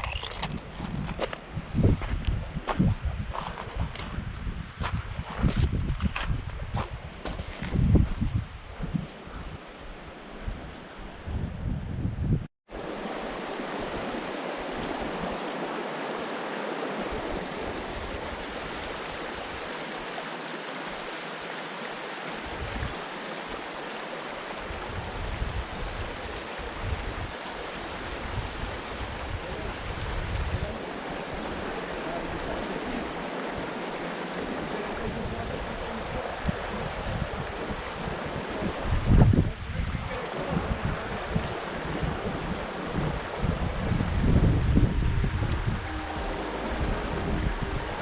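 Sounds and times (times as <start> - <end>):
wind gusting on microphone: 0.0 - 19.7, 24.6 - 48.0
river water rushing over rocks: 12.7 - 38.7, 45.4 - 48.0.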